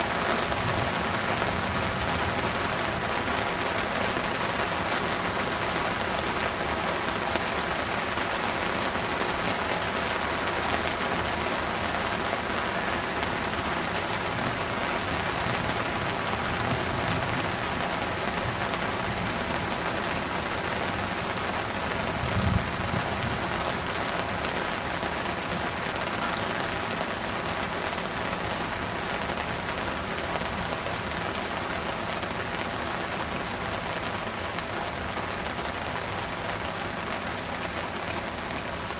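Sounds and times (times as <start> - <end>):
heavy rain hissing: 0.0 - 38.9.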